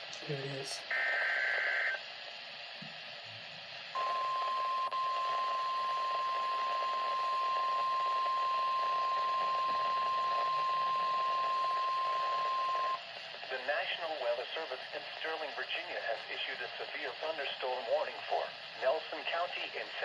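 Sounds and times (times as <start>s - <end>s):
radio static hiss: 0.0s - 20.0s
long steady alert beep: 4.0s - 13.0s.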